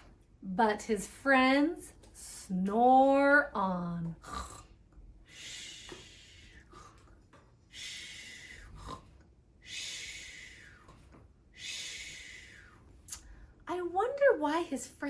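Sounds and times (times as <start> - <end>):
woman imitating snoring: 4.2 - 4.8.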